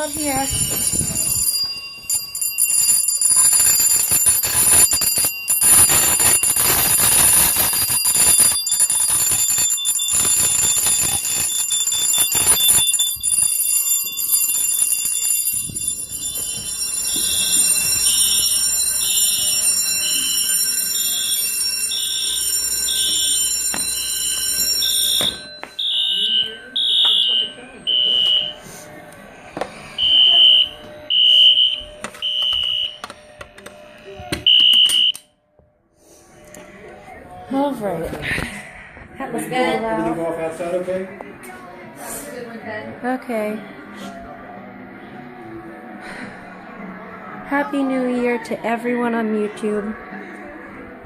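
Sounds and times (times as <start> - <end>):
smoke alarm beeping: 0.0 - 28.8, 29.8 - 35.4
fire alarm bells ringing: 0.0 - 29.0, 29.7 - 35.4
high-pitched alarm tones: 0.0 - 29.0, 29.7 - 35.4.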